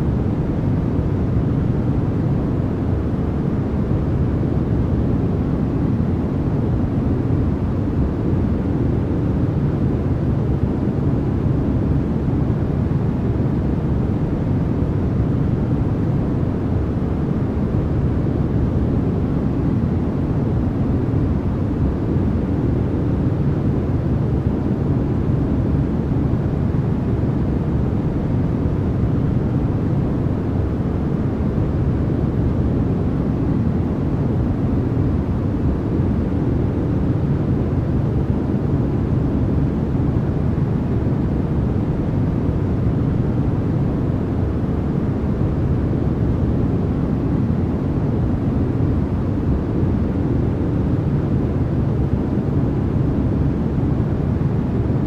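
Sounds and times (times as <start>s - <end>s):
deep white noise: 0.0s - 55.0s.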